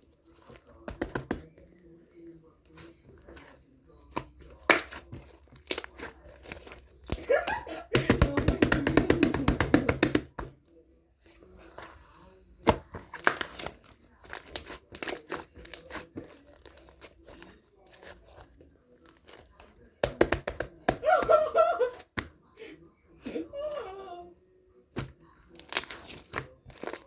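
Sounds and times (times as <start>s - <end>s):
crinkling and tearing: 2.7s - 7.7s, 11.2s - 21.0s, 25.0s - 27.0s.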